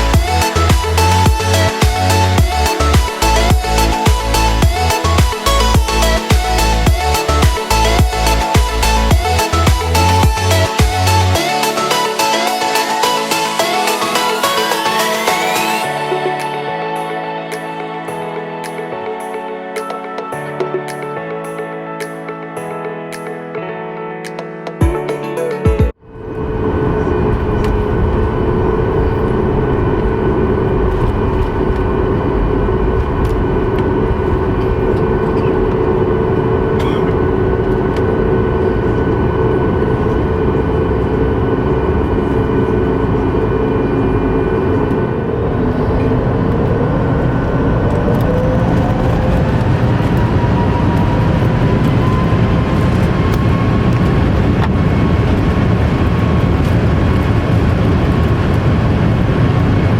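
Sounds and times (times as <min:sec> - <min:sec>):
jet engine whine rising: 0:00.0 - 0:20.2, 0:26.1 - 0:59.9
airplane cabin rumble: 0:26.0 - 0:59.9.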